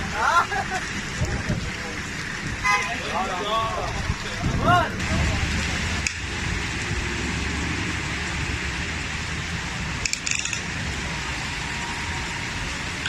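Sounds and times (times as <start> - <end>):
rain hissing: 0.0 - 13.0
road traffic rumble: 0.0 - 13.0
sharp clicks clatter: 10.0 - 10.7.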